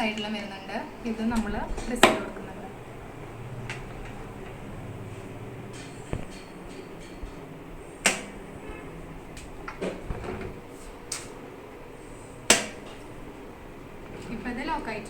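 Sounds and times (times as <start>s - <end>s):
plastic knocks and handling: 5.7s - 11.4s.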